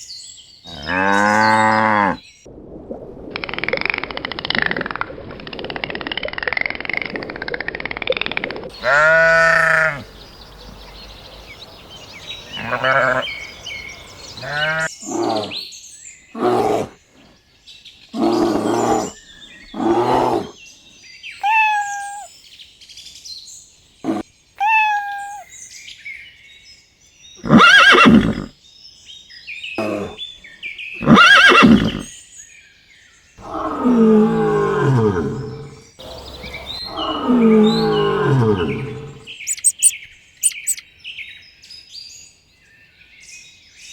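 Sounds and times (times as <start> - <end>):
animal calls: 21.4 - 22.3, 24.0 - 25.5, 33.4 - 40.8.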